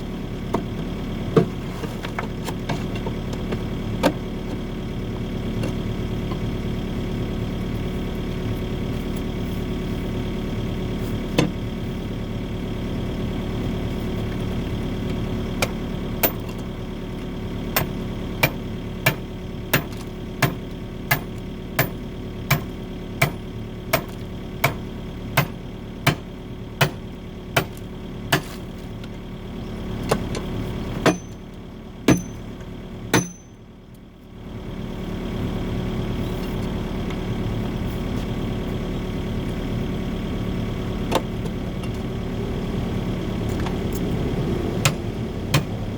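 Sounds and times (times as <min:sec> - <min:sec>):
diesel engine running: 0:00.0 - 0:45.9
hard strikes on concrete: 0:31.0 - 0:31.4, 0:32.1 - 0:32.4, 0:33.2 - 0:33.6, 0:44.8 - 0:45.8.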